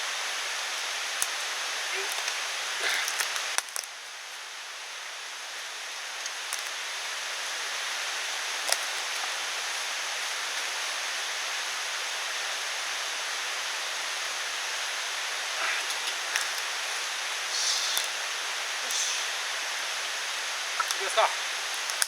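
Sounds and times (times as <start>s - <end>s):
mountain stream rushing: 5.8s - 22.0s.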